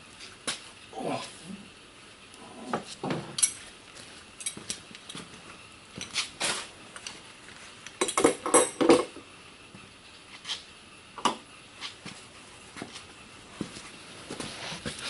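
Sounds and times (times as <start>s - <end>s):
metal parts and tools clinking: 3.4s - 3.6s.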